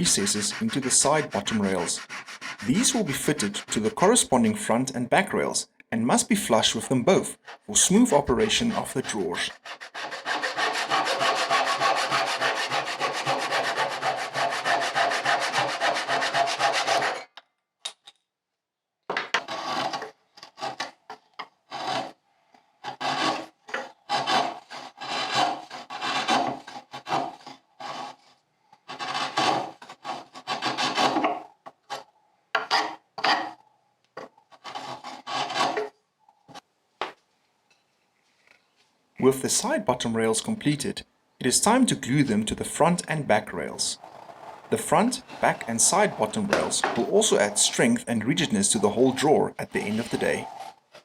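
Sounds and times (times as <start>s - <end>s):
hand saw cutting wood: 0.0s - 4.2s, 7.4s - 17.3s, 19.4s - 21.0s, 21.7s - 22.2s, 22.8s - 28.3s, 28.9s - 31.4s, 34.5s - 35.9s, 43.6s - 51.0s.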